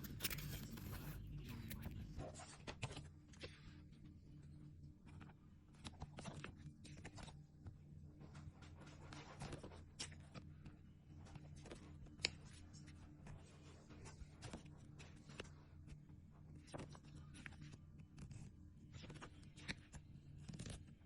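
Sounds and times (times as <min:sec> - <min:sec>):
steady low hum: 0:00.0 - 0:05.8.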